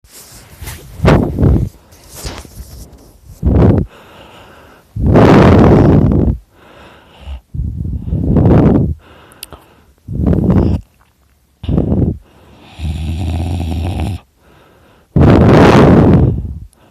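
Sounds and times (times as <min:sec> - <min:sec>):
snort: 0:07.1 - 0:07.5, 0:11.6 - 0:14.3
man snoring loudly: 0:12.6 - 0:14.3.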